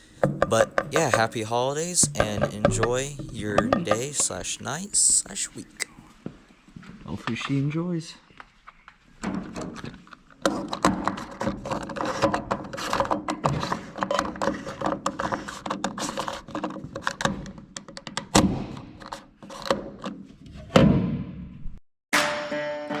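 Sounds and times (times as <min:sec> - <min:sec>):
knocking and clattering: 0:00.0 - 0:05.1
loud thump: 0:00.2 - 0:04.3.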